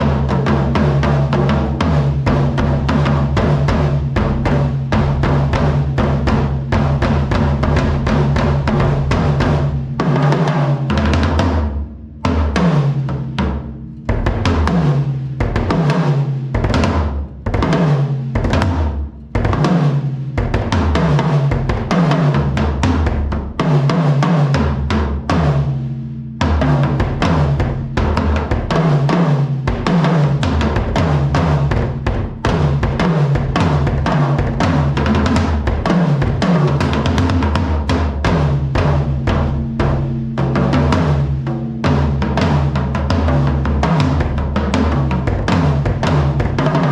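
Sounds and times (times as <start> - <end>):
drum kit playing fast: 0.0 - 46.9
kick drum hits: 11.0 - 14.8.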